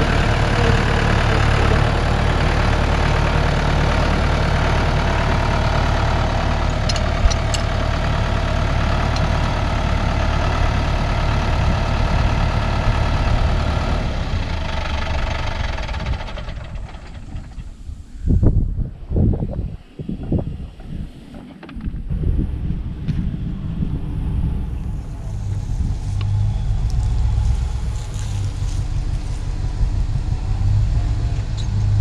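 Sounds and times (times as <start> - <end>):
vehicle engine running: 0.0 - 19.0, 20.2 - 32.0.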